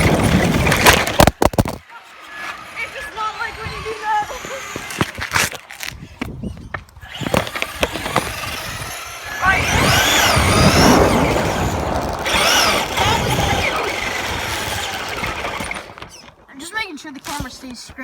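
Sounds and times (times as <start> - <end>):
electric motor whine: 0.0 - 5.7, 7.0 - 16.4
wheels rumbling: 0.0 - 18.0
chassis knocks and rattles: 9.7 - 16.5.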